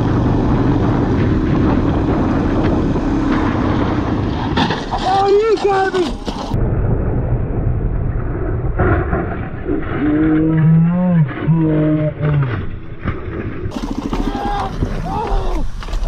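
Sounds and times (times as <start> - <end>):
long low steady tones: 0.0 - 4.6, 6.5 - 13.7
vehicle engine and road rumble: 0.0 - 16.0.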